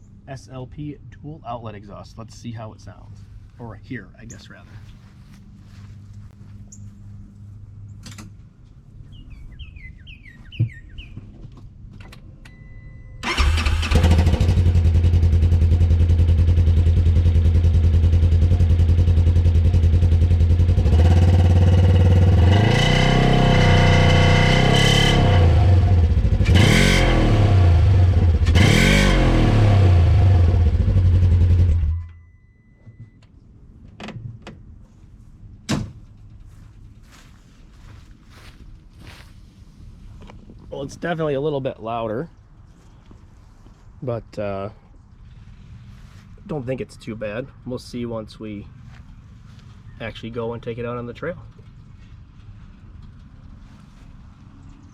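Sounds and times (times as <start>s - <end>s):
engine idling and revving: 13.2s - 32.1s.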